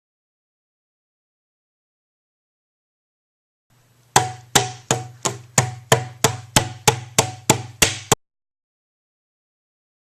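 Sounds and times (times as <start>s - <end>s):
sharp knocks: 4.2s - 8.2s.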